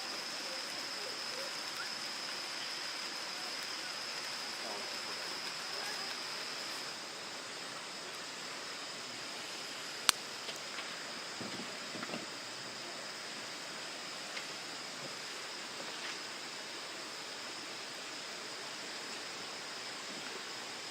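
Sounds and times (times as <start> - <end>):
babbling stream: 0.0 - 10.0.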